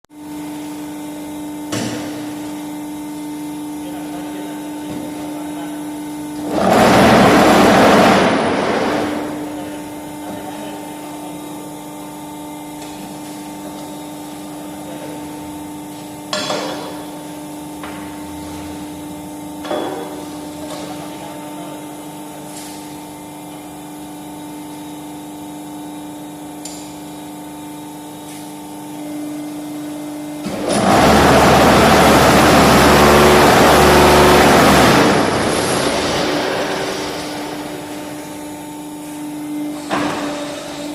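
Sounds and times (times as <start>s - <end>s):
steady motor hum: 0.2s - 40.9s
loud rough vibrating noise: 6.4s - 9.5s, 30.5s - 37.8s.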